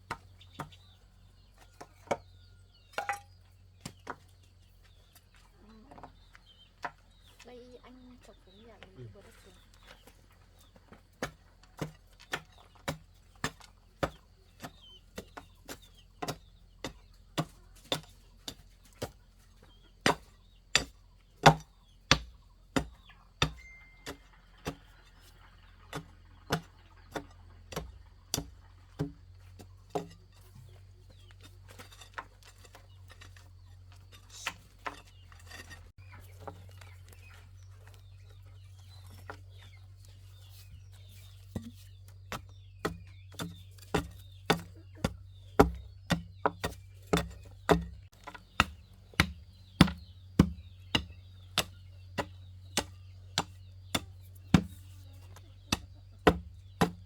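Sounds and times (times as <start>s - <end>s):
tool striking soil: 0.0s - 5.3s, 9.7s - 57.0s.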